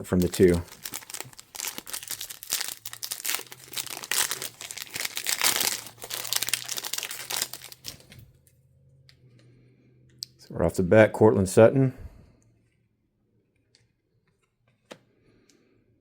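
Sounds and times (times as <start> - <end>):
plastic wrapper tearing and crinkling: 0.0 - 8.3.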